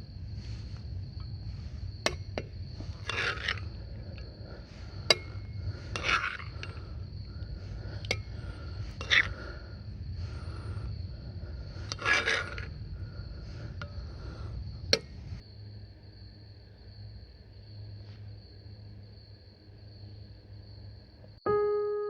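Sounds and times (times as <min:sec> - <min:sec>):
utensil scraping a pot: 0:00.4 - 0:15.4.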